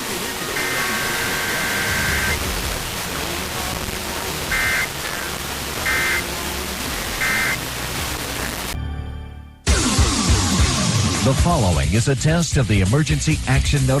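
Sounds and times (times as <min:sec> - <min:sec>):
radio static: 0:00.0 - 0:08.8
warbling digital data tones: 0:00.6 - 0:02.4, 0:04.5 - 0:06.3, 0:07.2 - 0:07.6.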